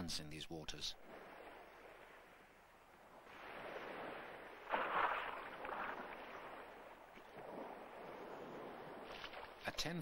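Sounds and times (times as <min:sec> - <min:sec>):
sea water: 0:00.7 - 0:10.0
water splash: 0:01.0 - 0:09.8.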